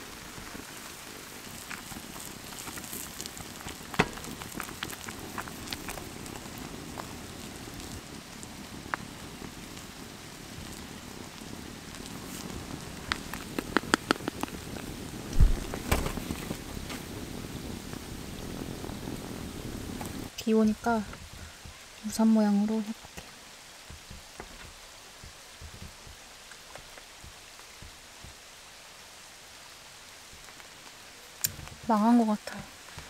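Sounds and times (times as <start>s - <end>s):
steady rain falling: 0.0s - 33.0s
dull thump: 15.3s - 16.4s.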